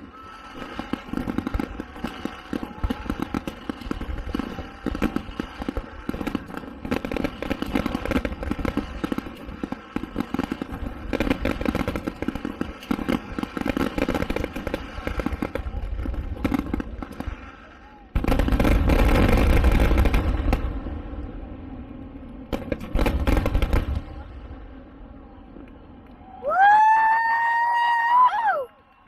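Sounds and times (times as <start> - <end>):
fireworks popping and crackling: 0.0 - 29.0
low firework booms: 18.1 - 21.8, 22.4 - 24.8.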